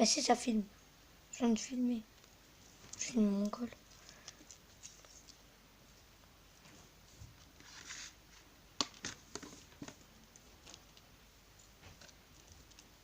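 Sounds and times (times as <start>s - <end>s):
soft rustle: 1.6s - 13.0s.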